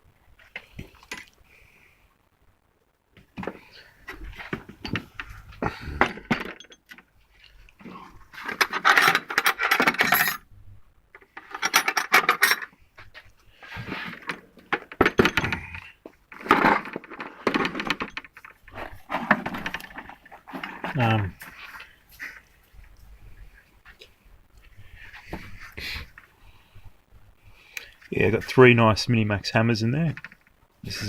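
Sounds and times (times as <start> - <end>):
metal tools clattering in toolbox: 6.0 - 6.9, 8.4 - 10.4, 11.4 - 12.7, 13.8 - 15.8.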